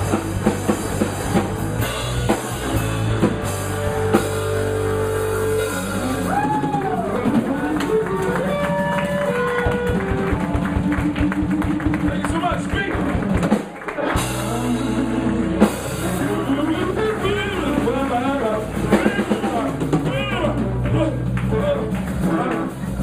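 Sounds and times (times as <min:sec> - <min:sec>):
lead guitar with bending notes: 0:00.0 - 0:13.5
drum kit beat: 0:00.0 - 0:23.0
rock band playing: 0:00.0 - 0:23.0.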